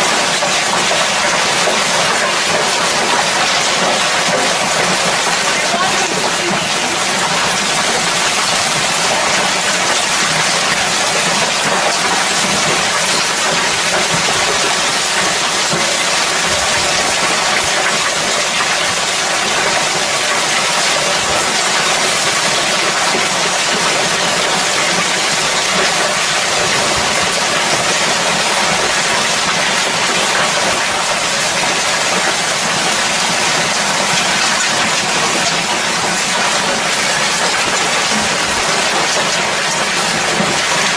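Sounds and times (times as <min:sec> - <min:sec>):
hail and heavy rain pelting: 0:00.0 - 0:40.9.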